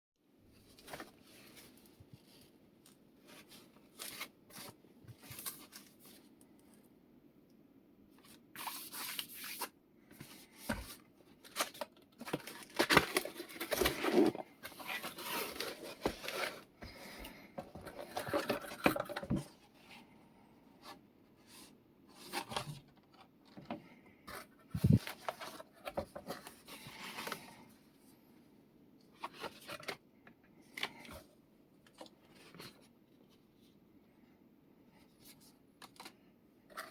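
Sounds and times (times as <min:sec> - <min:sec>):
cardboard and plastic tearing: 0:11.4 - 0:16.7.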